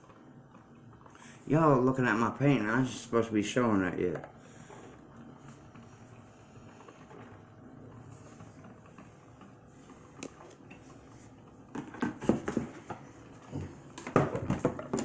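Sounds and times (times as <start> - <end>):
hard objects knocking and clattering: 11.7 - 15.0.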